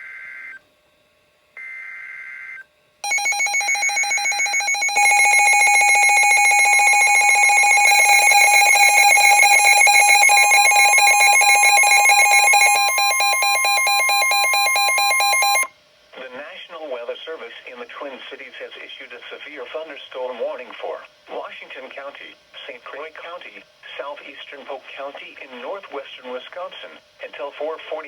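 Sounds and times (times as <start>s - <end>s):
two-tone pulsing alarm: 3.0s - 15.7s.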